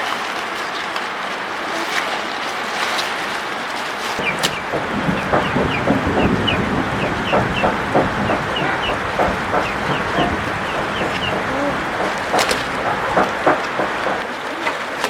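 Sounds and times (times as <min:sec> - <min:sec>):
heavy rain hiss: 0:04.2 - 0:14.2
chickens clucking: 0:04.2 - 0:14.3.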